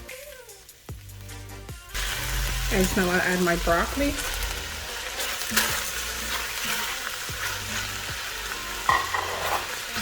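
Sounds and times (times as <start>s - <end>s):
vegetables sizzling in hot oil: 0.0s - 10.0s
spoon scraping and knocking pot: 8.9s - 10.0s.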